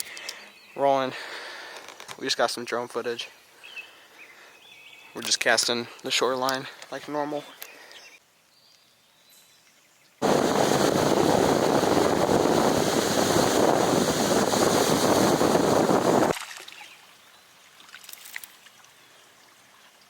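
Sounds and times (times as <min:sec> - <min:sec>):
rush of wind and water: 0:10.2 - 0:16.9.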